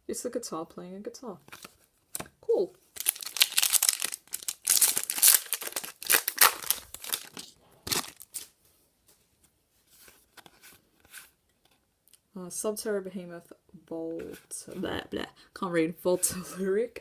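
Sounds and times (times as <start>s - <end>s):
foil wrapper tearing and crinkling: 3.0s - 8.5s.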